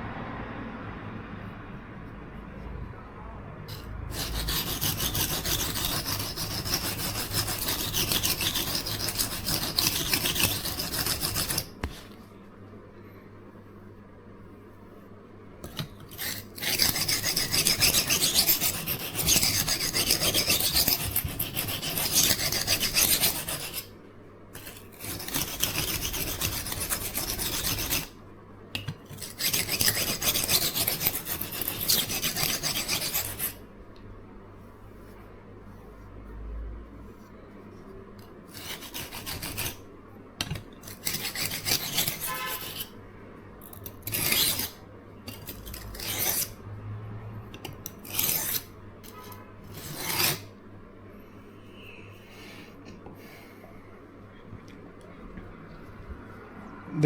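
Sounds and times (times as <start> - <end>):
knife scraping on sharpening stone: 3.7 - 12.0, 15.7 - 23.9, 24.6 - 28.1, 28.8 - 33.6, 38.5 - 39.8, 40.4 - 43.0, 43.7 - 46.6, 47.6 - 50.5.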